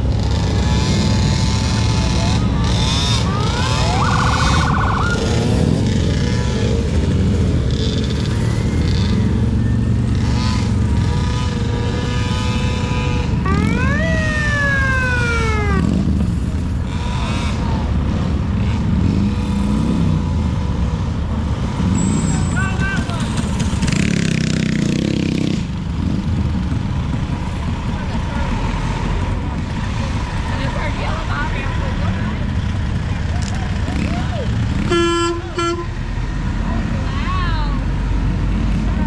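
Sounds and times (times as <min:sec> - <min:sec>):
vehicle engines rumbling by: 0:00.0 - 0:39.0
emergency vehicle siren whooping: 0:02.3 - 0:05.7, 0:13.2 - 0:16.2.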